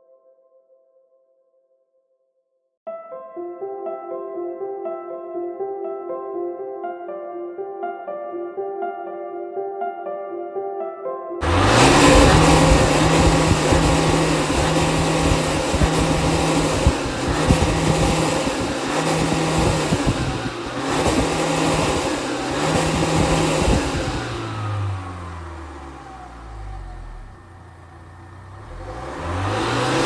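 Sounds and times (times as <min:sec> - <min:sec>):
car engine running hard: 0:11.4 - 0:30.0.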